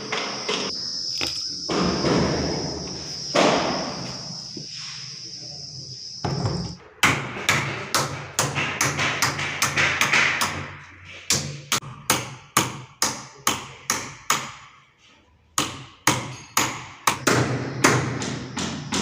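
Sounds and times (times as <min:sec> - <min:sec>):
crickets chirring: 0:00.0 - 0:11.7, 0:15.6 - 0:19.0.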